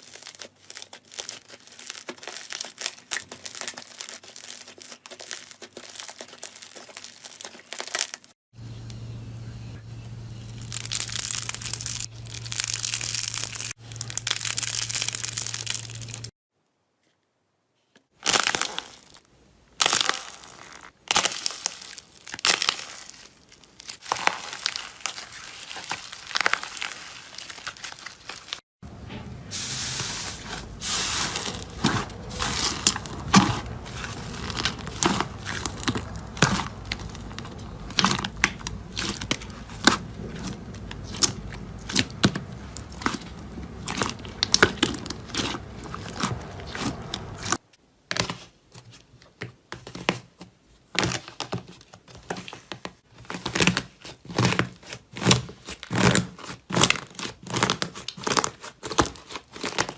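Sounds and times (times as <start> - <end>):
slime crackling and popping: 0.0 - 8.3, 10.6 - 16.3, 18.2 - 19.2, 19.8 - 28.6, 30.9 - 47.6, 53.3 - 59.9.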